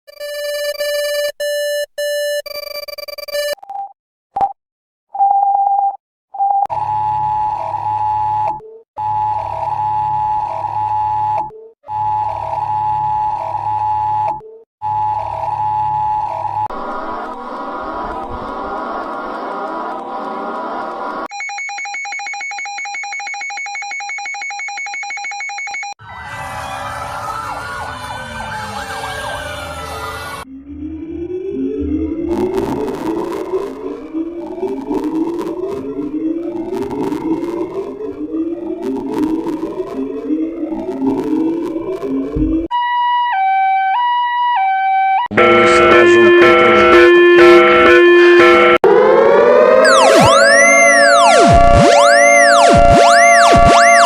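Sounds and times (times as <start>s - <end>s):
alarm cycle: 0.1s - 3.6s, 45.2s - 54.0s
sirens wailing: 6.7s - 21.3s, 26.0s - 54.0s
buzzy beeps: 45.3s - 48.8s, 49.8s - 54.0s
warbling alert tone: 45.3s - 54.0s.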